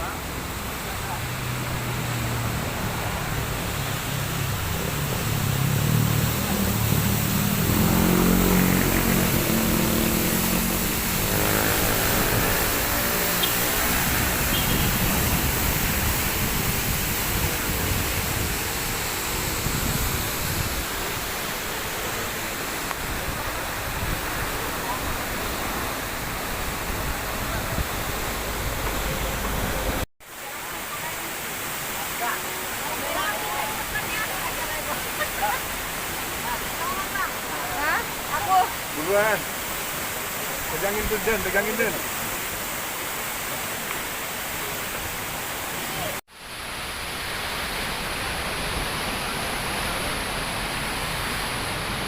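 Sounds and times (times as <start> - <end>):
steady rushing noise: 0.0 - 30.1
vehicle engine running: 3.3 - 14.9.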